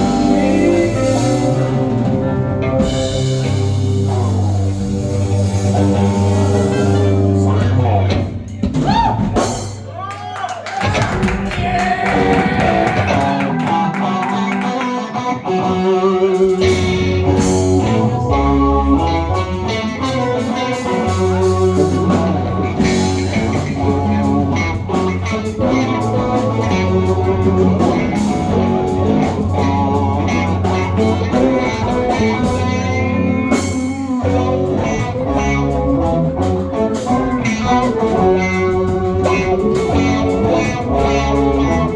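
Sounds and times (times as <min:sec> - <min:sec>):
person singing: 0:00.0 - 0:02.0, 0:11.6 - 0:23.4, 0:24.9 - 0:41.9
electric guitar: 0:00.0 - 0:09.7, 0:10.8 - 0:41.9
bass line: 0:00.0 - 0:09.9, 0:10.8 - 0:41.9.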